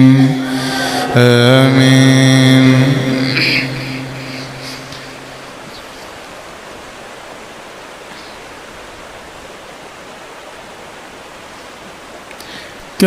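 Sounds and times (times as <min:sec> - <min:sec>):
held voice: 0:00.0 - 0:05.1
steady background hiss: 0:00.0 - 0:13.0.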